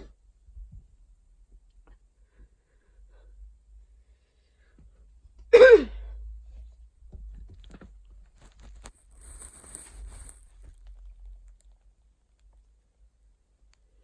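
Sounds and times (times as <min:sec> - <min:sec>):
person coughing: 0:05.5 - 0:06.1.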